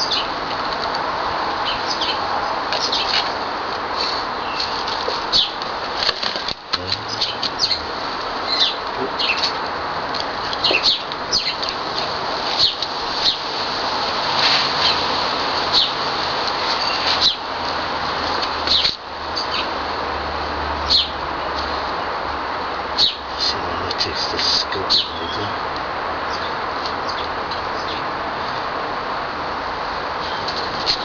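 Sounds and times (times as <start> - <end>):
small birds chirping: 0.0 - 0.4, 1.6 - 3.3, 4.1 - 5.6, 6.7 - 9.6, 10.4 - 11.8, 12.5 - 13.5, 15.7 - 16.0, 16.8 - 17.4, 18.7 - 19.7, 23.0 - 25.6, 26.2 - 28.1
steady background hiss: 0.0 - 31.0.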